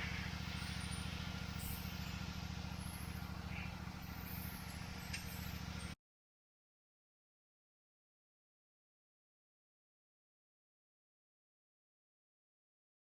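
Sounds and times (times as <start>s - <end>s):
small petrol engine running: 0.0s - 6.0s.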